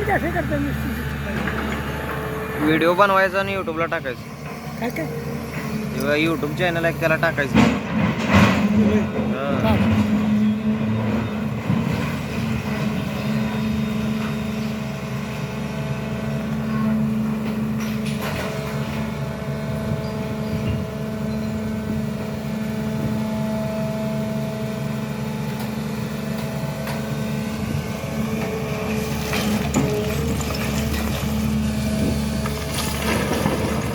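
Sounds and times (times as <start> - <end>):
excavator diesel engine running: 0.0 - 33.9.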